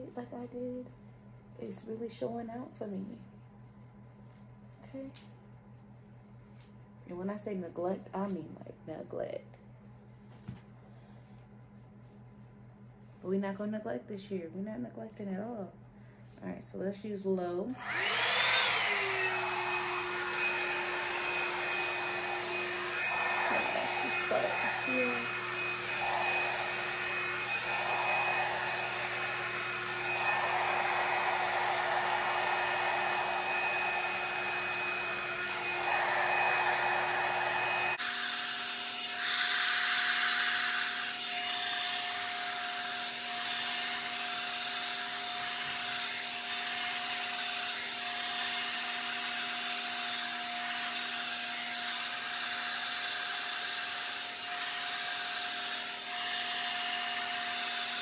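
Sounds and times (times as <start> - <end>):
hot air brush motor whine: 17.8 - 58.0.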